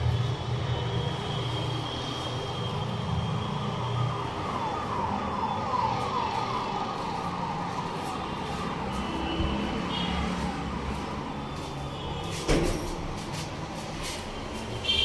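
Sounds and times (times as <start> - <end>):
street traffic rumble: 0.0 - 15.0
siren wailing: 0.9 - 12.2.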